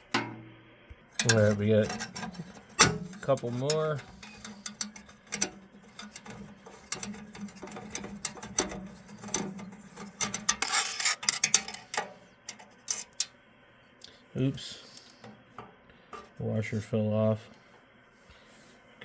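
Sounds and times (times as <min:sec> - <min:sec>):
scraping clicks: 0:01.2 - 0:13.3
wrench clicking on metal screws: 0:01.2 - 0:13.3.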